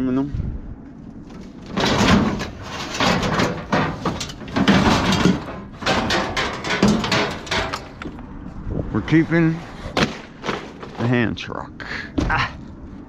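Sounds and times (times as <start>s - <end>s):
scrap metal clanking: 1.3s - 8.2s, 9.6s - 11.1s.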